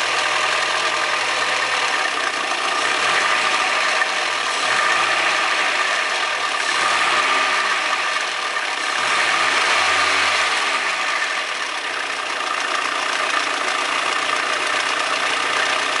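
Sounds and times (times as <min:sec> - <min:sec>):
car engine idling and revving: 0:00.0 - 0:16.0
engine rattle or tapping: 0:11.6 - 0:16.0.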